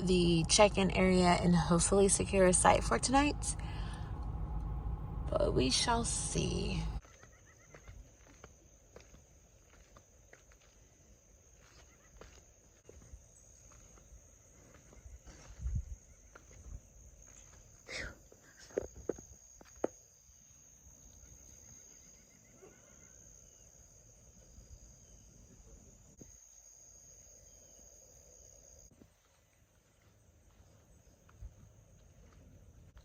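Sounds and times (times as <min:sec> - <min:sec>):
low thumps: 0:00.1 - 0:07.0.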